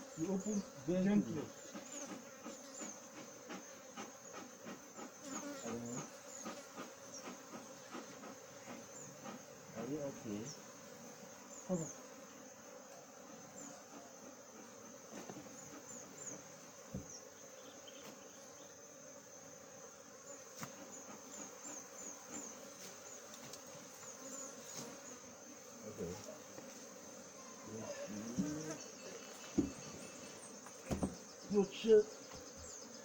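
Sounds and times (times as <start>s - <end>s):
honey bees buzzing: 0.0s - 33.0s
soft knocks: 29.5s - 29.9s, 30.9s - 31.2s.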